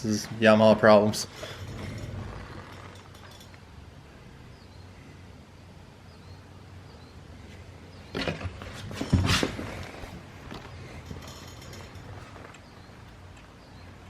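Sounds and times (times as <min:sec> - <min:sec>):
handling noise: 0:01.2 - 0:03.6, 0:08.1 - 0:13.6.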